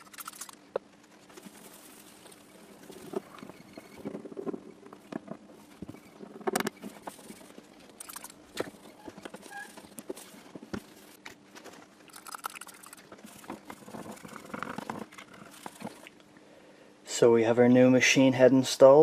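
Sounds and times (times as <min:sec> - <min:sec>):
rubbing or scraping: 0:00.0 - 0:11.9.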